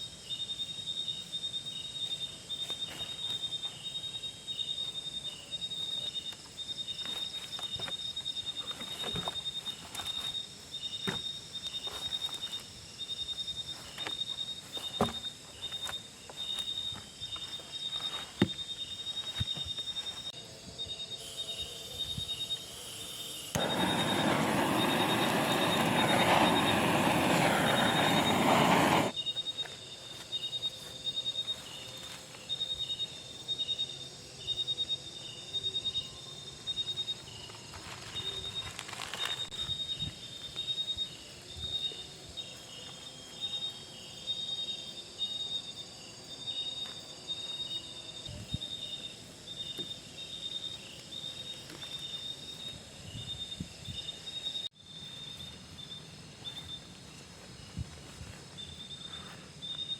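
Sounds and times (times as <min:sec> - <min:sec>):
insects chirping: 0:00.0 - 0:59.9
loud rushing noise: 0:23.6 - 0:29.1.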